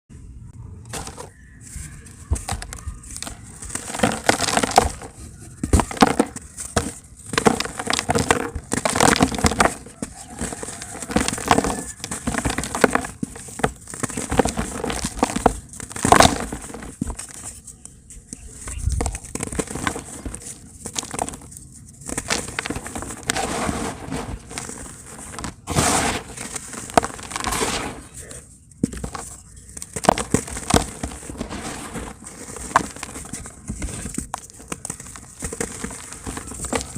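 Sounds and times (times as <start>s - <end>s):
dry cement crunching: 0.9s - 36.9s.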